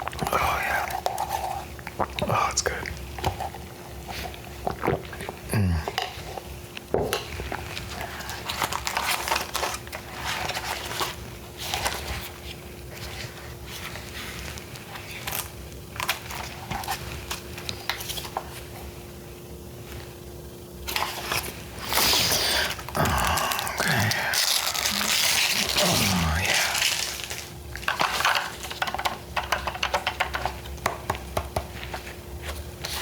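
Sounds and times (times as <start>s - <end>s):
faint steady hum: 0.0s - 33.0s
packaging crinkling and rustling: 7.3s - 18.6s, 20.8s - 30.7s.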